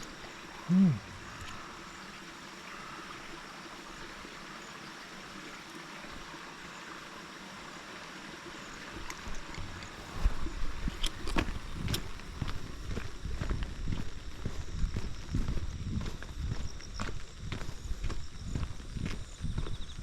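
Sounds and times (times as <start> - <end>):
running water in a stream: 0.0 - 20.0.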